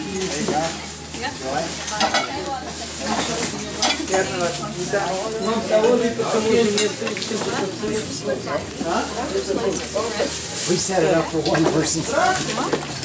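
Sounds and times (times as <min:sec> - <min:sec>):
people chattering: 0:00.0 - 0:13.0.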